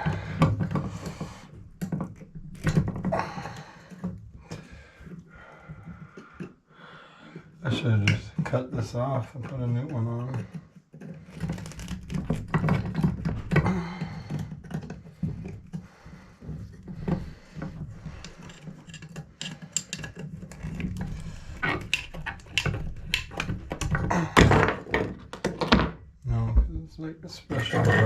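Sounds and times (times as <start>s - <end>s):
metal parts and tools clinking: 18.0s - 24.0s.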